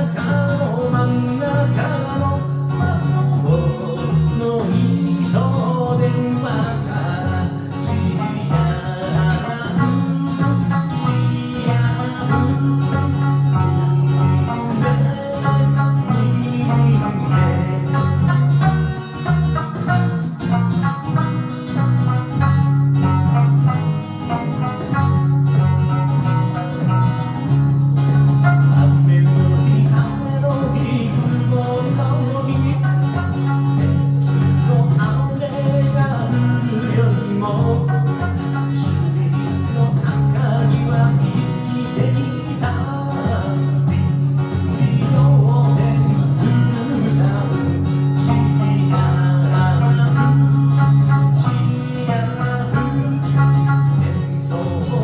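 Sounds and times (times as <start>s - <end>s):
plucked electric lute melody: 0.0s - 55.0s
steady low bass line: 0.0s - 55.0s.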